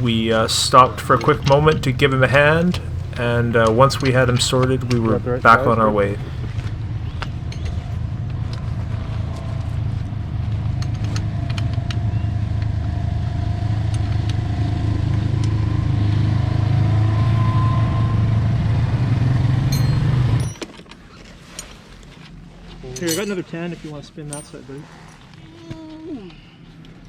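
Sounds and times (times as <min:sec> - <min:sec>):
motorcycle engine running: 0:00.0 - 0:20.9.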